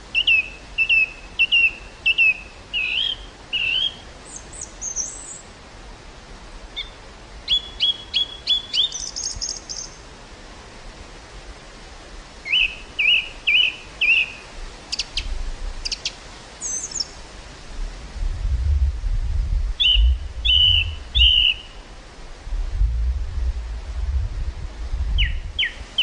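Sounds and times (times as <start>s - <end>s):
steady outdoor hiss: 0.0s - 26.0s
small birds chirping: 0.2s - 5.4s, 6.8s - 10.0s, 12.5s - 17.2s, 19.8s - 21.8s, 25.2s - 26.0s
wind buffeting microphone: 17.2s - 26.0s.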